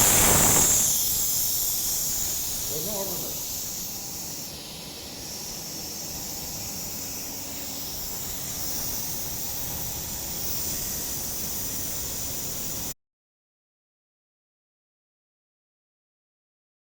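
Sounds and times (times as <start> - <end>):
air compressor hissing: 0.0 - 13.0.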